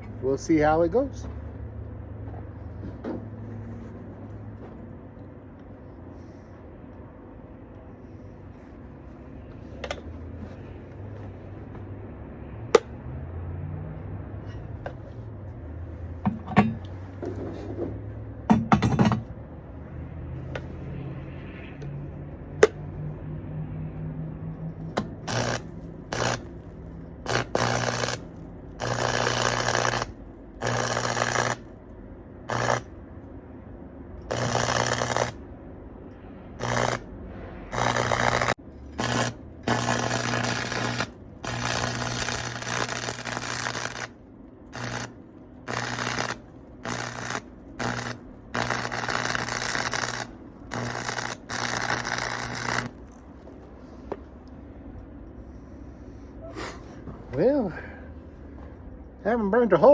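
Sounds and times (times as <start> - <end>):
arc welder crackling and buzzing: 24.8 - 33.2, 34.2 - 35.6, 36.6 - 37.1, 37.7 - 54.5.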